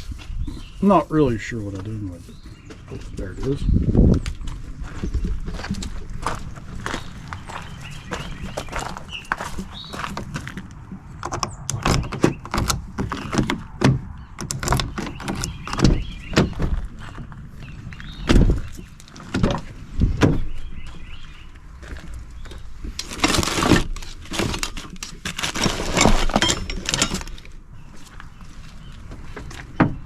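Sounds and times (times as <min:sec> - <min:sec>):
truck door knocks and clunks: 0:11.2 - 0:17.2, 0:18.1 - 0:20.6.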